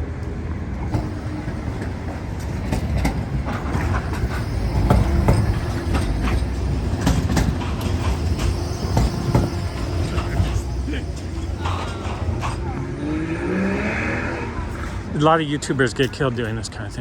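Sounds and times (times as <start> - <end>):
city street traffic rumble: 0.0 - 17.0
scattered clicks and knocks: 0.8 - 12.8.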